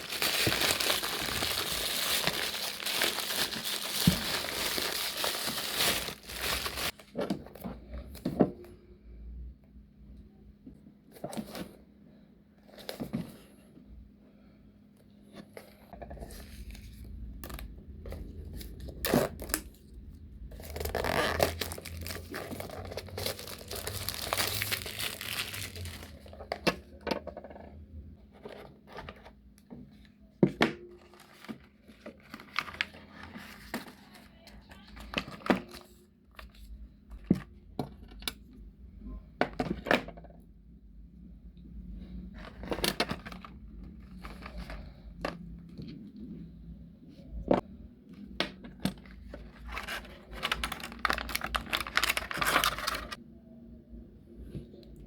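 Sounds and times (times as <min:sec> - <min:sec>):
packaging tearing and crinkling: 0:00.0 - 0:07.0, 0:20.6 - 0:26.4, 0:49.5 - 0:53.2.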